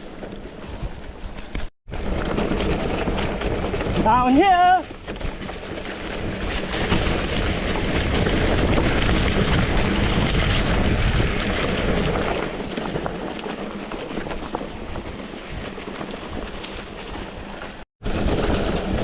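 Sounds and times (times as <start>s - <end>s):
bicycle tyres rolling on dirt: 0.0s - 19.0s
bike rattles and clicks: 0.0s - 19.0s
wind rushing over microphone: 0.7s - 19.0s.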